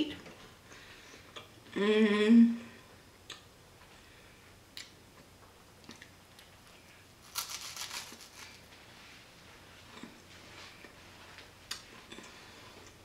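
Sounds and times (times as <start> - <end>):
crunching of rice wafer: 7.2 - 8.7.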